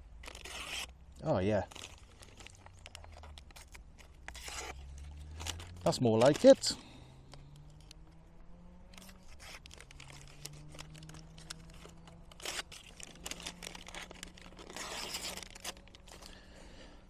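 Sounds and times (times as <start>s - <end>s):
knife cutting paper: 0.2s - 1.0s, 3.3s - 6.6s, 9.0s - 16.4s
paper rustling and crinkling: 0.2s - 6.9s, 9.0s - 16.6s.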